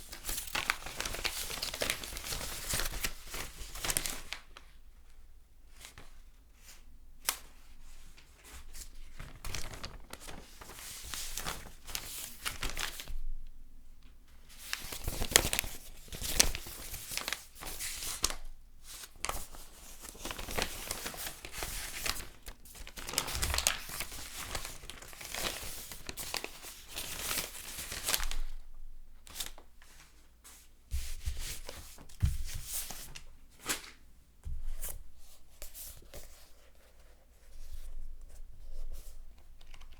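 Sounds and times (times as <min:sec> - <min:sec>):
paper pages rustling: 0:00.0 - 0:04.4, 0:08.4 - 0:13.2, 0:14.6 - 0:28.6, 0:29.3 - 0:39.9.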